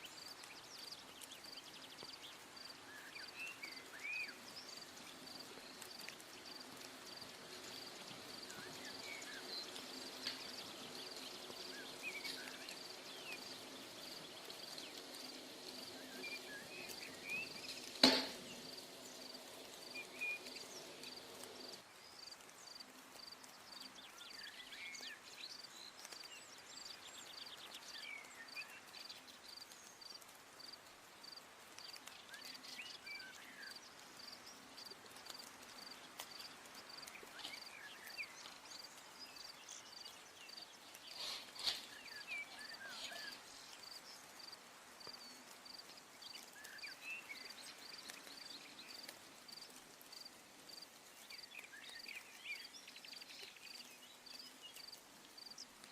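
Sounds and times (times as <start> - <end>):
insect chirping: 4.6 - 23.4
short bird chirps: 41.1 - 43.4.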